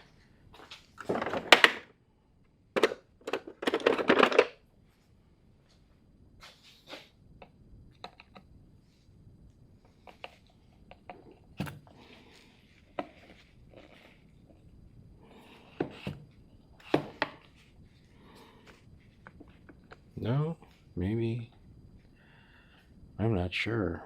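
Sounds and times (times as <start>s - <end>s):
clicks and knocks of disassembly: 1.0s - 1.9s
scraping and rustling: 11.1s - 14.7s.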